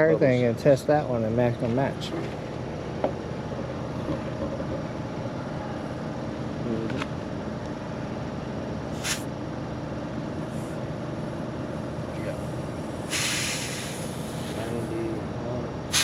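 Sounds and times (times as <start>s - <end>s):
steady mechanical hum: 0.0s - 16.0s
air hissing from tire valve: 8.9s - 9.3s, 12.3s - 15.1s.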